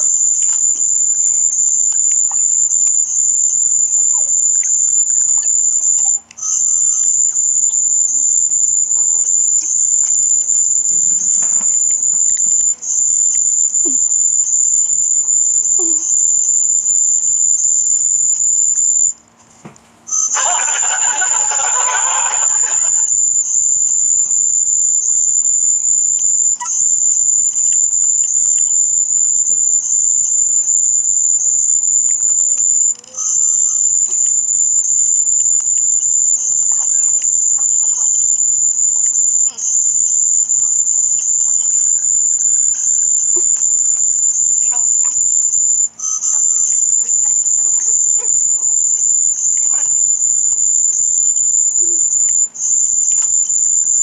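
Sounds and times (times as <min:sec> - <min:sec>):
harsh burst of noise: 0:20.2 - 0:24.5.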